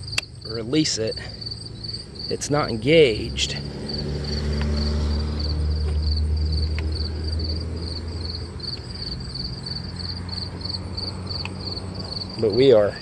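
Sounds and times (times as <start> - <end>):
crickets chirping: 0.0 - 13.0
engine running: 0.0 - 13.0.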